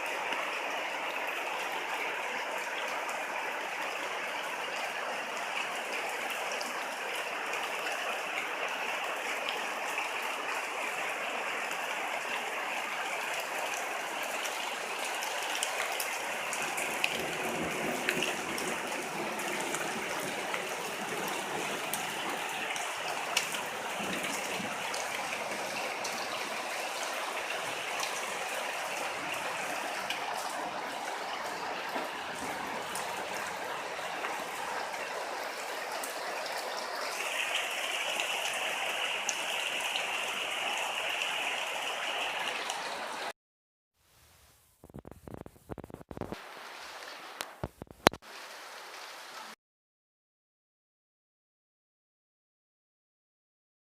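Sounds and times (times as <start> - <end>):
rain falling: 0.0 - 43.3, 44.9 - 49.6
raindrops ticking: 15.2 - 34.5, 44.8 - 46.4, 47.4 - 48.2.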